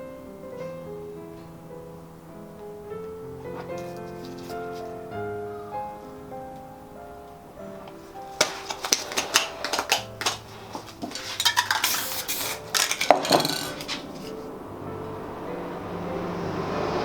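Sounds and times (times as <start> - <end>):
spray cans and tools clattering: 8.1 - 14.4
hissing bursts of spray: 11.7 - 13.0.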